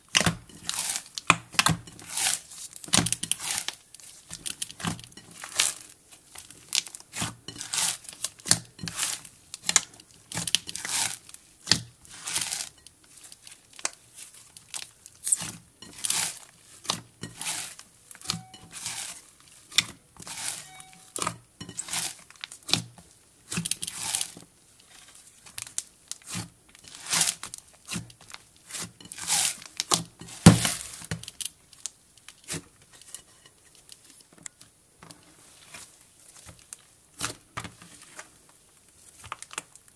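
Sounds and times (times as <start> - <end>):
slime squishing by hand: 0.0 - 31.5.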